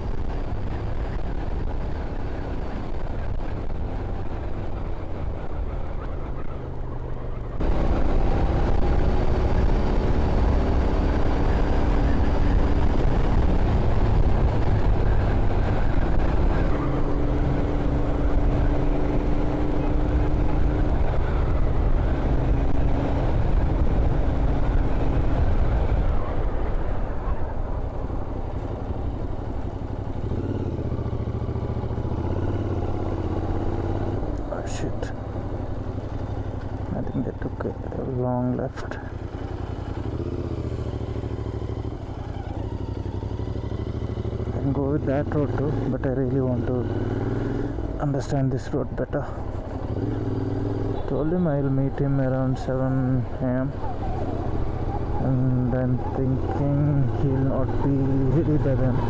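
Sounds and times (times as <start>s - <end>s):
wind rushing over microphone: 0.0s - 37.2s
motorcycle engine running: 0.0s - 59.0s.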